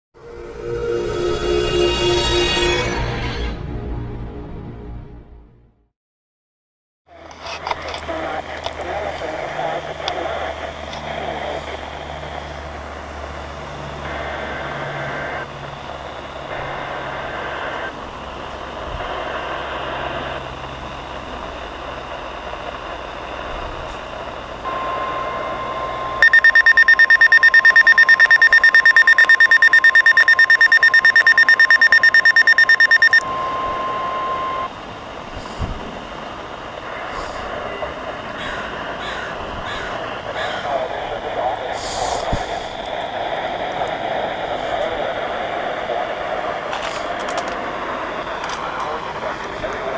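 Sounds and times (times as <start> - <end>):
reception static: 7.1 - 49.9
data tone bursts: 19.1 - 34.7
rapidly pulsing alarm beep: 24.6 - 34.7
steady alert tone: 25.1 - 34.7.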